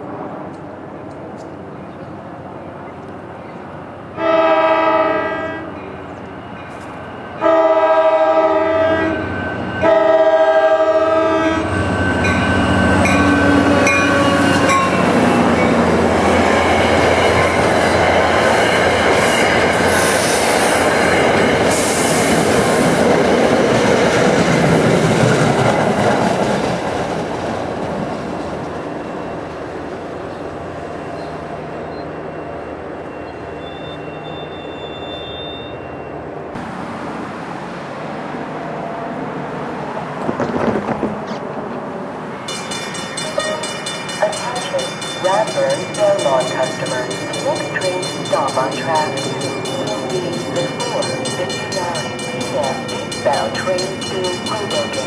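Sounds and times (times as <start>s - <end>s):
locomotive air horn blasts: 4.2s - 5.8s, 7.4s - 11.8s
train wheels clattering over rails: 40.2s - 41.4s.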